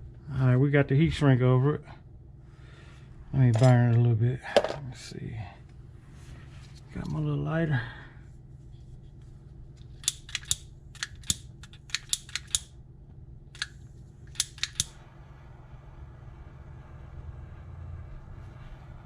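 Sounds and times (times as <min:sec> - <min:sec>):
lighter clicking: 0:10.0 - 0:12.7, 0:13.6 - 0:15.0.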